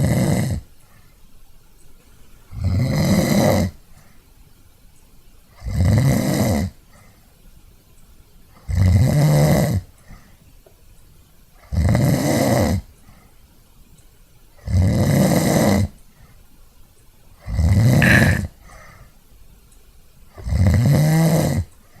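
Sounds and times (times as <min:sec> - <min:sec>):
quiet breathing: 0:00.0 - 0:01.5, 0:03.6 - 0:04.5, 0:06.6 - 0:07.4, 0:09.8 - 0:10.6, 0:12.8 - 0:13.7, 0:15.8 - 0:16.6, 0:18.0 - 0:19.4
person snoring: 0:18.0 - 0:18.5.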